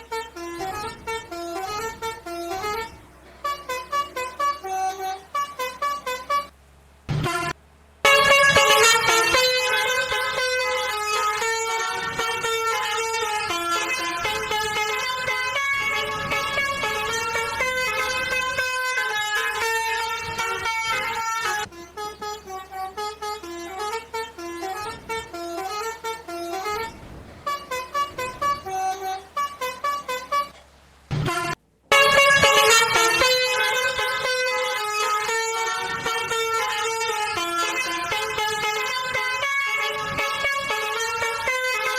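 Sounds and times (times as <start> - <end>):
musical bus horn tune: 0.0 - 41.9
thump: 7.1 - 7.6.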